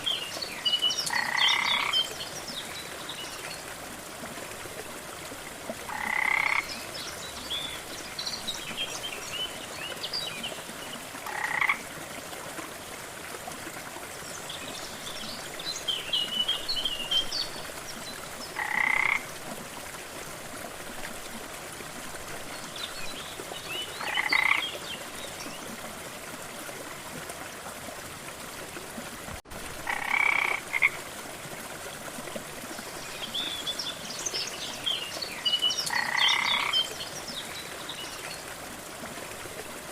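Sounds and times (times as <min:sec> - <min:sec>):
falling water rushing: 0:00.0 - 0:39.9
frogs croaking: 0:01.0 - 0:02.2, 0:05.8 - 0:06.9, 0:11.2 - 0:11.9, 0:18.5 - 0:19.3, 0:24.0 - 0:24.8, 0:29.8 - 0:31.0, 0:35.5 - 0:37.1.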